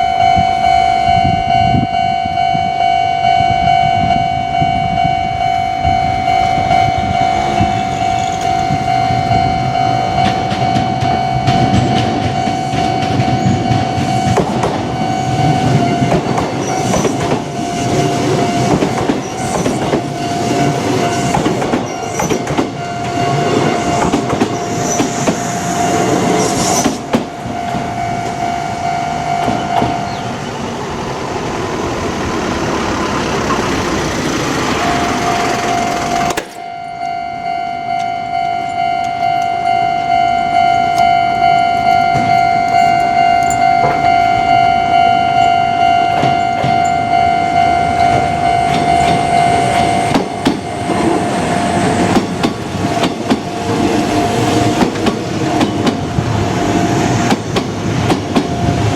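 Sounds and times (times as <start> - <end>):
level-crossing alarm bell ringing: 0.0 - 30.8, 32.6 - 56.9
train passing with rail clatter: 0.0 - 58.9.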